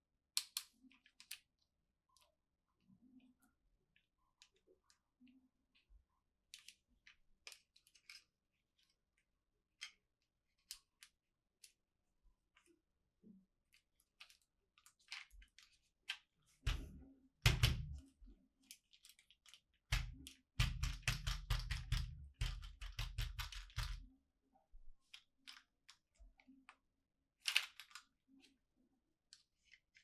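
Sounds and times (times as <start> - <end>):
toy packaging clicks and crackles: 18.7 - 24.0, 27.4 - 28.1.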